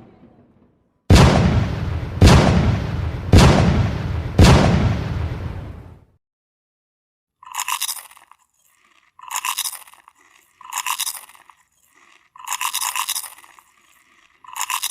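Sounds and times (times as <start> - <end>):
crunching sound effect: 7.4 - 14.9.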